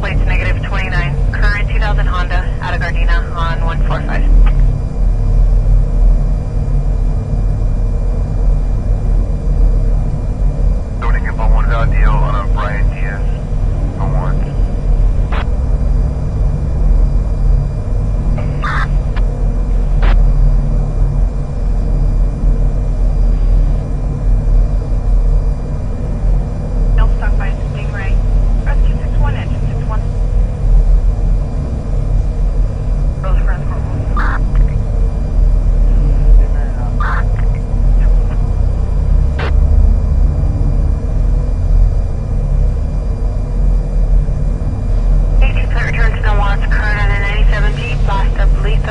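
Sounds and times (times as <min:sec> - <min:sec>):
low rumble: 0:00.0 - 0:48.9.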